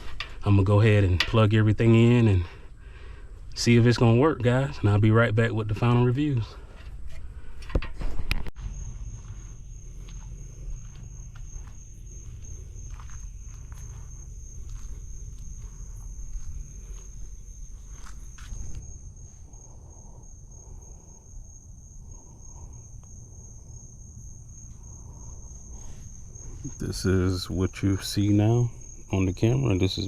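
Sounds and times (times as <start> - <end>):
crickets trilling: 0.0 - 30.0
light footsteps: 8.5 - 19.0.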